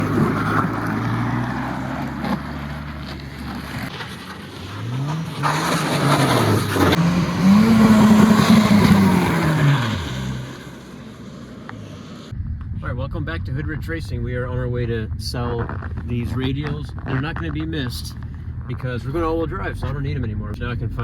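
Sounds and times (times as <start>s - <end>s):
car engine revving: 0.0s - 12.3s
tyre and road noise: 0.0s - 12.9s, 14.2s - 21.0s.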